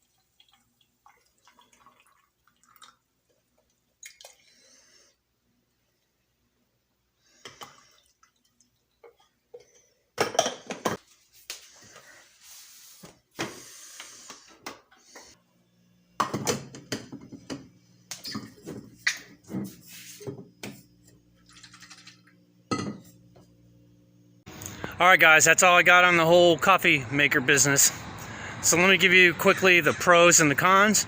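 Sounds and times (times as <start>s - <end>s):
dishes clinking and knocking: 9.1s - 11.0s, 22.7s - 23.1s.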